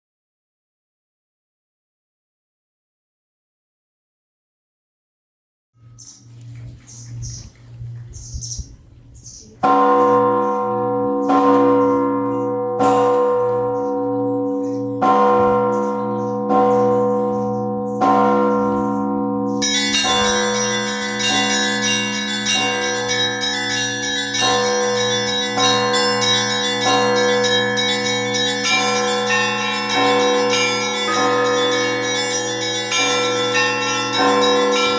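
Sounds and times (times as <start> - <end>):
large bells ringing: 9.6 - 34.9
small high bells chiming: 12.3 - 34.9.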